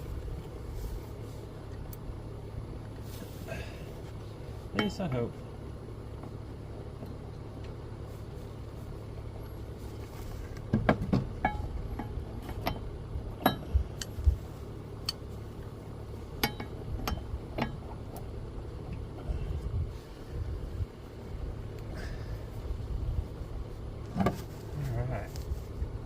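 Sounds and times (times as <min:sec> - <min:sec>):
steady low rumble: 0:00.0 - 0:26.0
metallic clinks and knocks: 0:11.4 - 0:14.2, 0:16.4 - 0:18.0.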